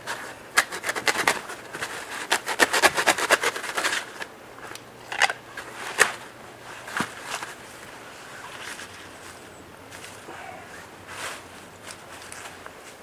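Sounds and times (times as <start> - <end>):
foam being cut with snips: 0.5 - 4.2.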